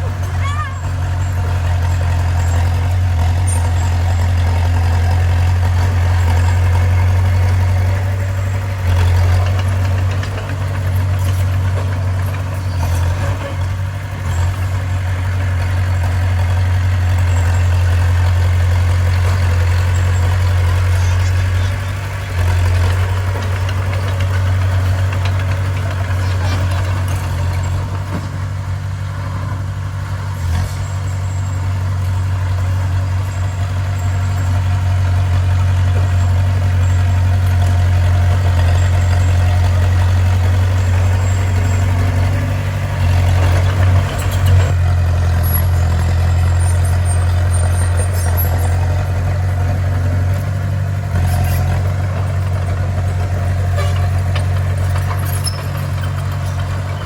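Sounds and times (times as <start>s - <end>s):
bulldozer diesel engine running: 0.0s - 57.0s.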